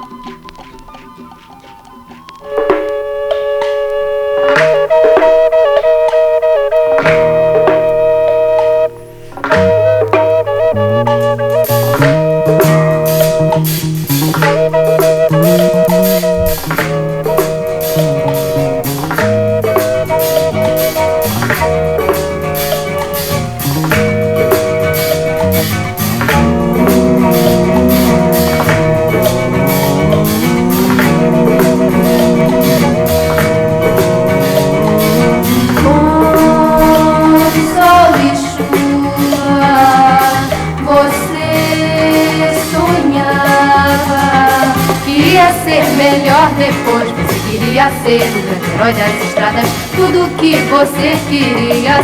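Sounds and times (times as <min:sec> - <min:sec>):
guitar: 0:00.0 - 0:52.0
higher melody line: 0:02.4 - 0:40.7
bass: 0:02.4 - 0:52.0
drum kit beat: 0:09.4 - 0:52.0.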